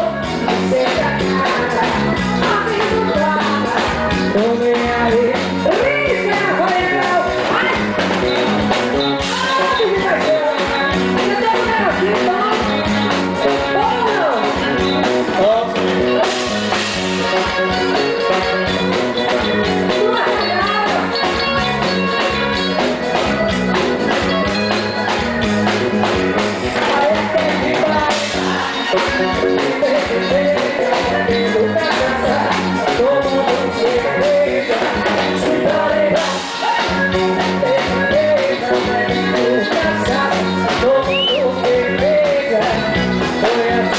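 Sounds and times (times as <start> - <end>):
live band playing dance music: 0.0 - 43.9.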